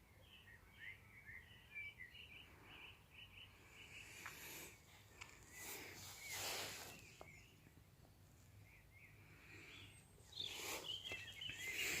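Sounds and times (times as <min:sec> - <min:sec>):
bird chirps: 0:00.0 - 0:04.7, 0:05.4 - 0:12.0
soft hiss: 0:04.1 - 0:07.8.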